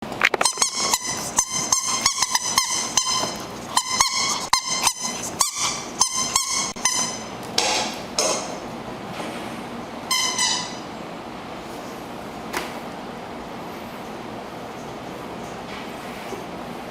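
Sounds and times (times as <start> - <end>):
dog chewing toy: 0.3 - 7.3
squeaky toy squeaking: 0.4 - 7.3, 10.1 - 10.8.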